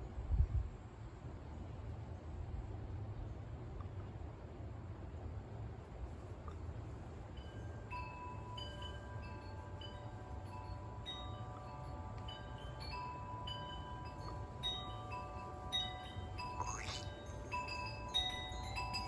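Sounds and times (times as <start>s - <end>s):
low steady hum: 0.0s - 19.0s
chimes ringing: 7.3s - 19.0s.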